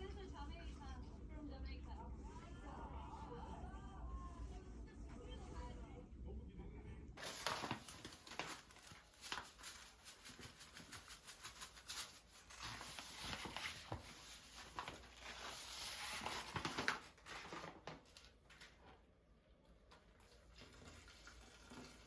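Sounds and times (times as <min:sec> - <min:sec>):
rustling of things being handled: 0:07.2 - 0:19.2.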